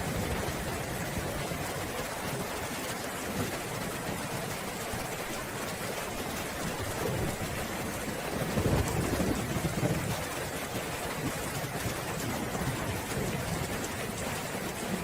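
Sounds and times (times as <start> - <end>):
steady rain: 0.0 - 15.0
thunder rumbling: 6.6 - 10.4.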